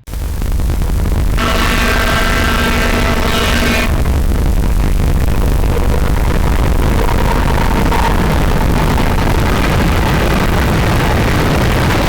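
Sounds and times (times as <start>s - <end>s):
distorted steam train whistle: 1.4s - 4.2s.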